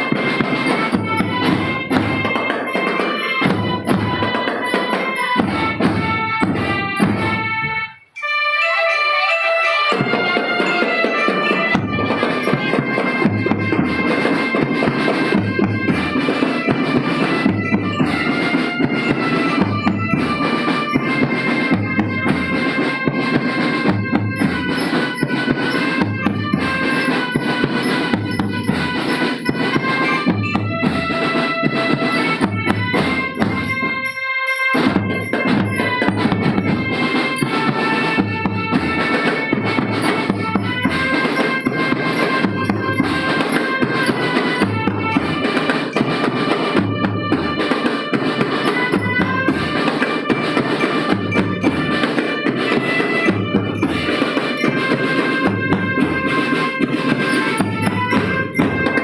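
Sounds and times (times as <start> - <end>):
snare drums: 0.0 - 59.0
sustained melody notes: 0.0 - 59.0.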